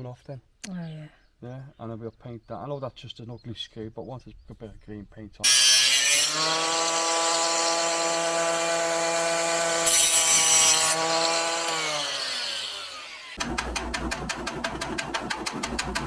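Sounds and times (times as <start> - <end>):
angle grinder cutting metal: 5.4 - 13.5.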